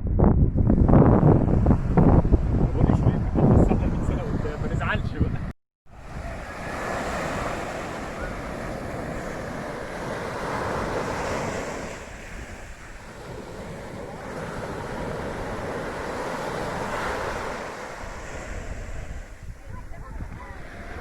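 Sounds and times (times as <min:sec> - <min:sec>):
wind buffeting microphone: 0:00.0 - 0:21.0
sea waves breaking on shore: 0:05.9 - 0:21.0.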